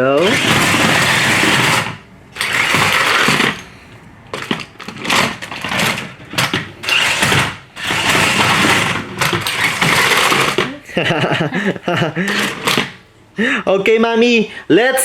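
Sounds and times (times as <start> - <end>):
toy car motors whirring: 0.0 - 10.8, 12.2 - 13.0.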